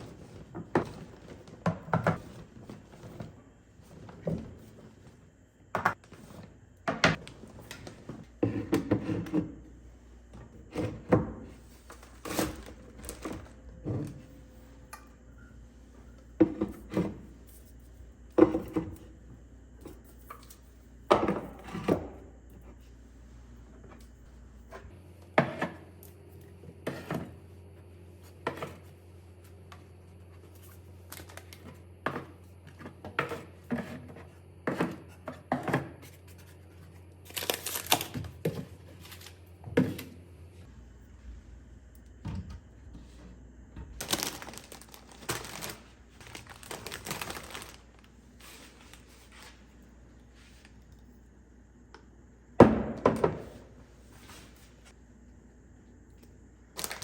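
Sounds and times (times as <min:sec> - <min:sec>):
packaging rustling and tearing: 0:37.3 - 0:38.2, 0:44.0 - 0:49.4, 0:56.8 - 0:57.0.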